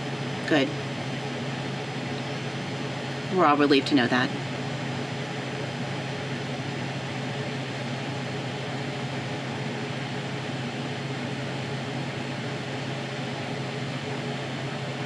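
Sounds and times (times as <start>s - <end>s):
low background hum: 0.0s - 15.0s.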